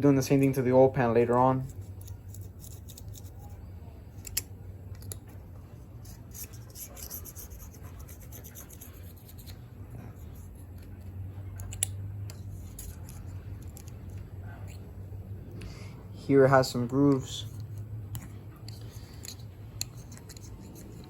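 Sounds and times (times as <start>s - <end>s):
steady low hum: 0.0s - 21.0s
razor blade scraping metal: 1.6s - 3.6s, 6.0s - 11.0s, 11.6s - 14.9s, 17.2s - 21.0s.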